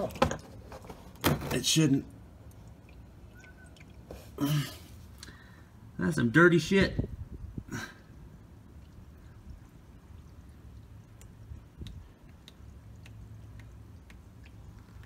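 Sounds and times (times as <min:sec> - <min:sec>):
small ticks: 0:11.1 - 0:15.0.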